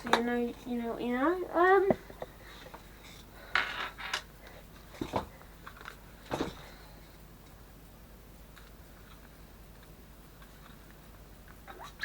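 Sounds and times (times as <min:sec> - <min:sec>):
handling rustles and knocks: 0:01.8 - 0:06.9.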